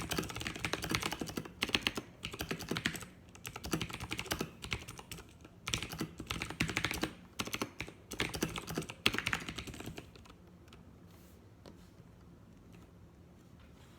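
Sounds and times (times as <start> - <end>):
mechanical keyboard clicking: 0.0 - 10.8.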